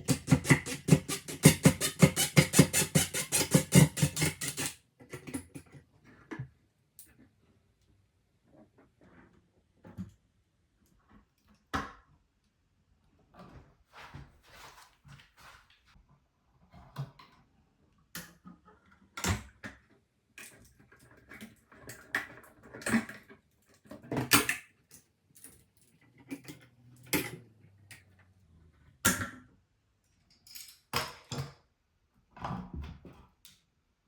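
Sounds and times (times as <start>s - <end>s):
hand tools clicking and tapping: 0.0s - 5.7s.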